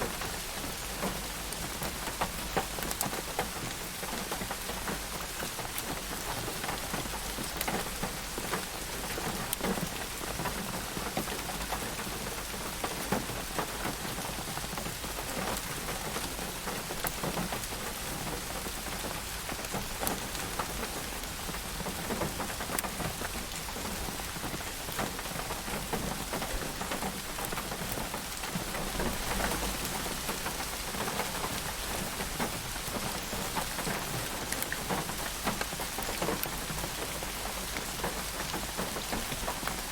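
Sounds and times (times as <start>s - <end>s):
raindrops ticking on a surface: 0.0s - 39.9s
steady rain hiss: 0.0s - 39.9s.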